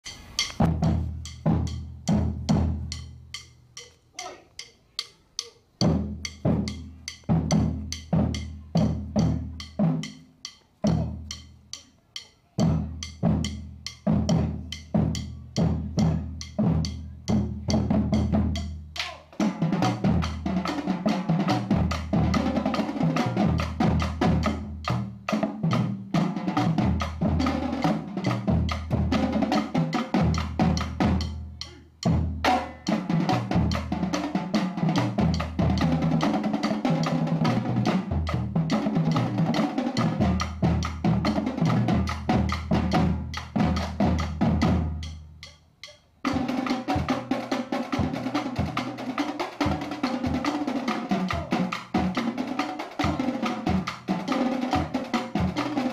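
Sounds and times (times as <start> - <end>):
low bass drums: 0.0 - 3.5
marching drumline playing: 0.0 - 3.6, 5.8 - 11.6, 12.6 - 55.9.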